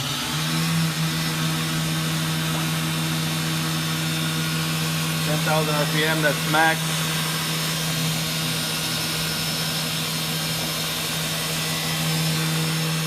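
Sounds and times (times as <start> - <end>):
machine spindle hum and hiss: 0.0 - 13.0.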